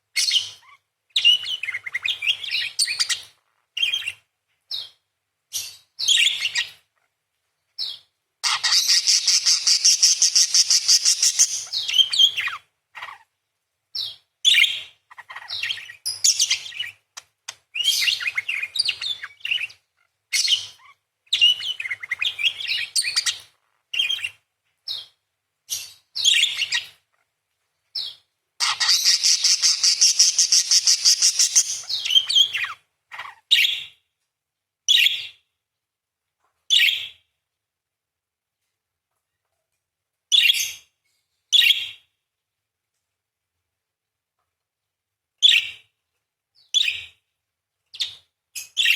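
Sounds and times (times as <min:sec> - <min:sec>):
parakeet chattering trills and chirps: 0:00.2 - 0:04.2, 0:04.8 - 0:07.1, 0:07.8 - 0:13.3, 0:14.0 - 0:17.0, 0:17.7 - 0:25.1, 0:25.8 - 0:27.2, 0:28.0 - 0:33.9.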